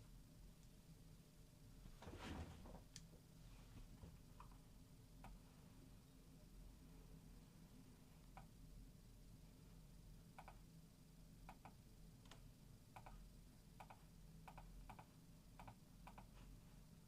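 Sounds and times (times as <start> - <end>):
keyboard typing clicks: 10.4 - 10.6, 11.5 - 12.4, 13.0 - 13.2, 13.8 - 16.4.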